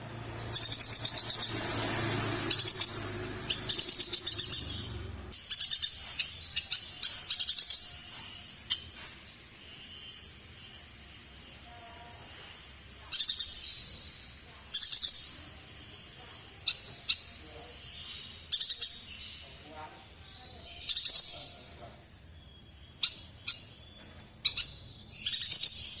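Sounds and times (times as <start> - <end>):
bird singing high rapid notes: 0.0 - 19.6, 20.2 - 26.0.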